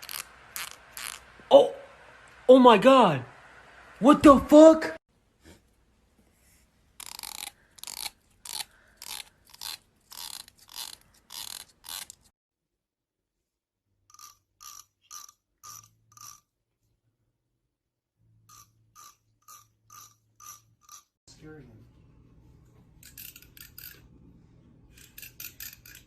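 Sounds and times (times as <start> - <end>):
comb teeth scratching: 0.0 - 1.4, 7.0 - 12.3, 24.9 - 26.0.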